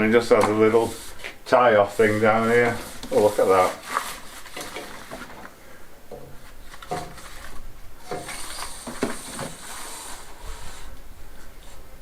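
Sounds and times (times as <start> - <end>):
bamboo blind slats rustling: 0.0 - 12.0.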